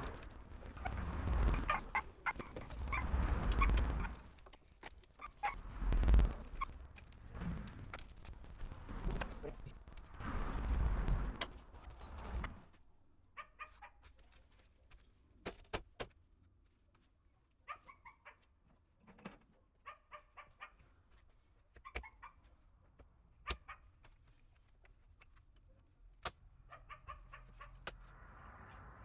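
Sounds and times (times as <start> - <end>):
faint repeated animal calls: 0.1 - 4.2, 5.2 - 6.9, 13.3 - 14.0, 19.8 - 20.9, 26.6 - 28.0.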